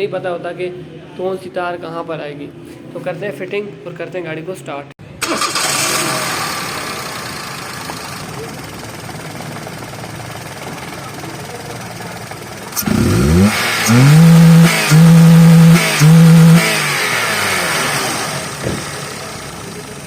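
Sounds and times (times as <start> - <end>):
car engine idling and revving: 5.3 - 20.0.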